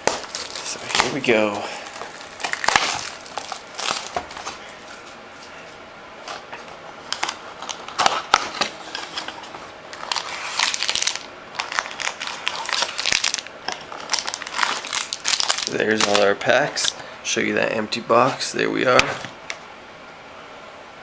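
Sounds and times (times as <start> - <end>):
crinkling plastic: 0.0 - 5.6, 6.3 - 17.0.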